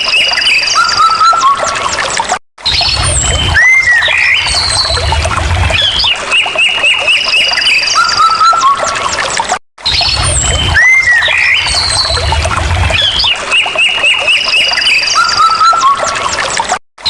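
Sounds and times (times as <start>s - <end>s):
birds calling and singing: 2.7s - 8.6s, 9.9s - 16.1s.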